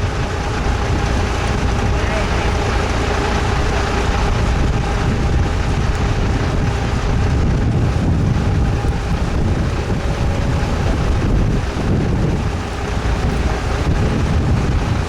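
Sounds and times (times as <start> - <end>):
boat motor rumbling: 0.0 - 15.0
wind buffeting microphone: 0.0 - 15.0.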